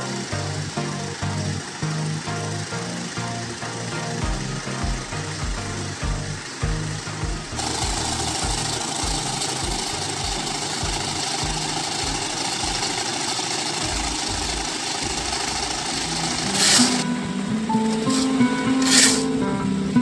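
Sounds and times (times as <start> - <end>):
loud hiss: 0.0 - 19.5
steady engine hum: 0.0 - 20.0
machine engine thumping: 4.2 - 19.3.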